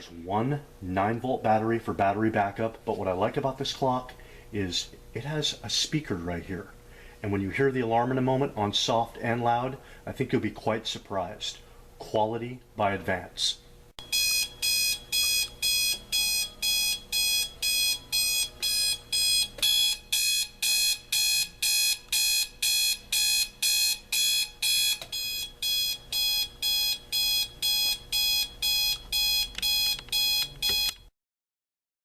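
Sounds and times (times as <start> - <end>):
alarm clock beeping: 14.0 - 31.1.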